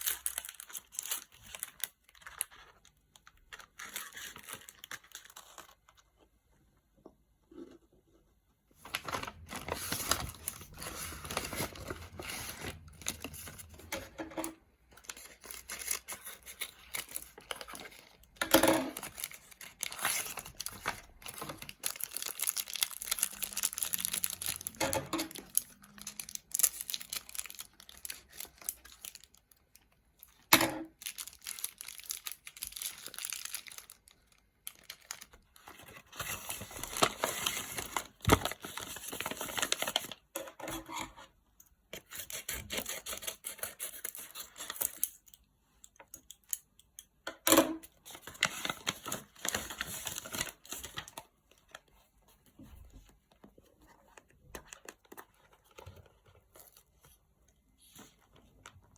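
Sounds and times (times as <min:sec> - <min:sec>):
gum wrappers crinkling and tearing: 0:00.0 - 0:05.9, 0:15.0 - 0:40.2.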